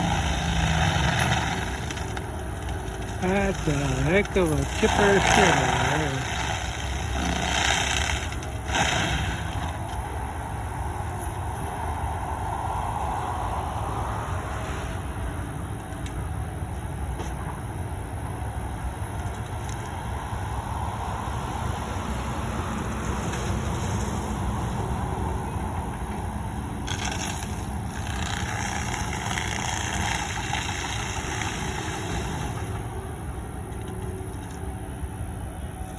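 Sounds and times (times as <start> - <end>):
wood chipper running: 0.0 - 10.7, 21.2 - 35.0.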